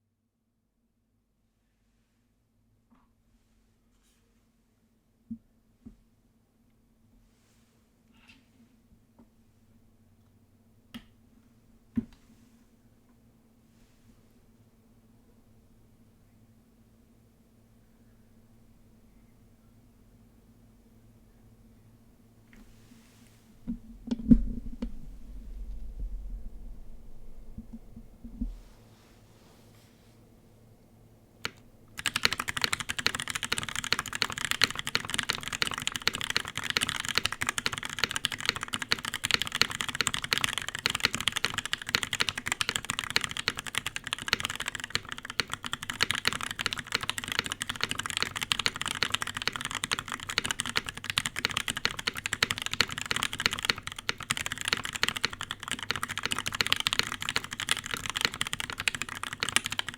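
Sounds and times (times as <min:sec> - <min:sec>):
fast mechanical keyboard typing: 0:31.4 - 0:59.9.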